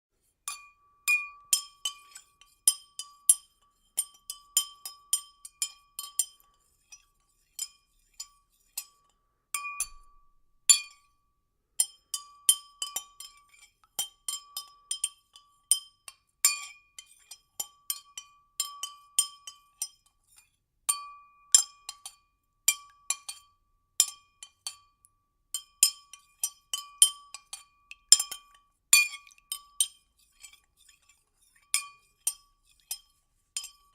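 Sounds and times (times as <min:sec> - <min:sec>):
stirrer clinking against glass: 0:00.5 - 0:11.1, 0:11.8 - 0:20.1, 0:25.6 - 0:33.9
liquid stirred in glass: 0:01.6 - 0:10.3, 0:25.6 - 0:33.9.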